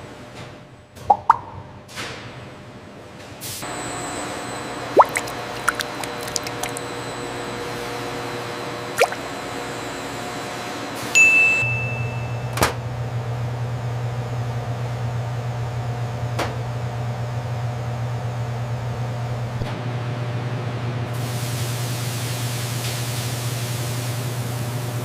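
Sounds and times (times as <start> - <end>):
low machine hum: 3.8 - 10.2.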